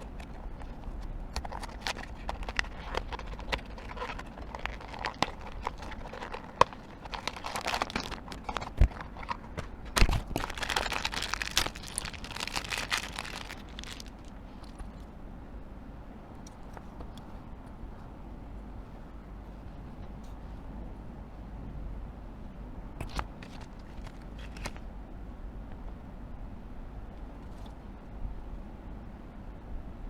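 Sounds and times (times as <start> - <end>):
plastic wrapping crinkling: 0.0 - 14.8, 23.0 - 24.8.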